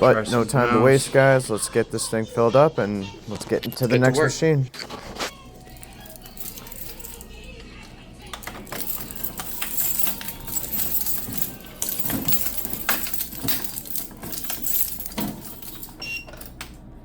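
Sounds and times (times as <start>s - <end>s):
vending machine clicks and rattles: 8.3s - 16.8s.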